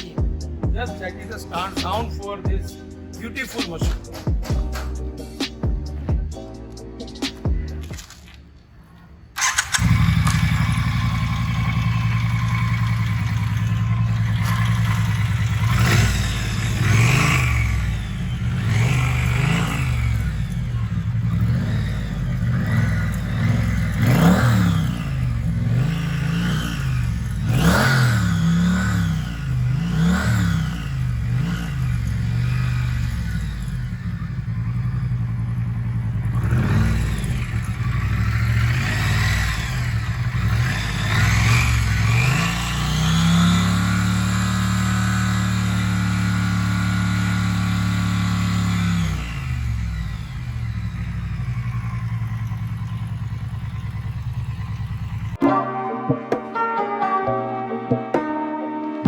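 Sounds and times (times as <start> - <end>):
motorcycle engine idling: 9.4 - 55.4
motorcycle throttle blips: 9.4 - 55.4.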